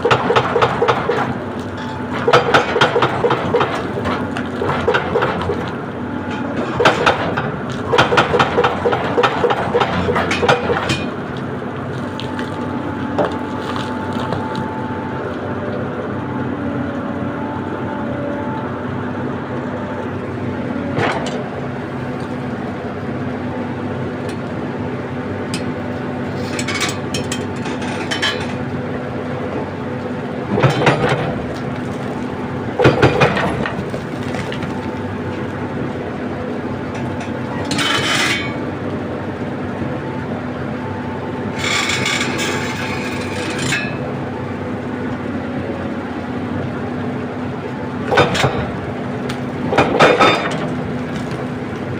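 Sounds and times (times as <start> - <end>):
heavy equipment engine running: 0.0 - 51.9
bangs and scrapes of working gear: 37.6 - 38.6, 41.6 - 44.0.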